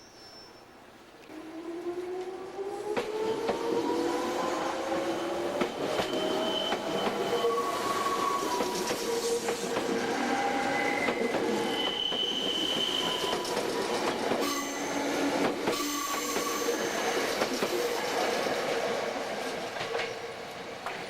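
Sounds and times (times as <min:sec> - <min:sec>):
train wheels squealing: 0:00.0 - 0:00.8, 0:03.6 - 0:18.3
train rumble: 0:01.3 - 0:21.0.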